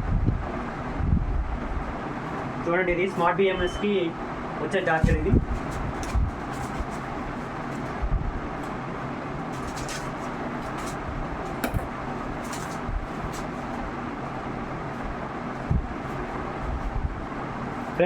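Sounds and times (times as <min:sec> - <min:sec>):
knocks and clicks of charger: 0:11.6 - 0:11.9.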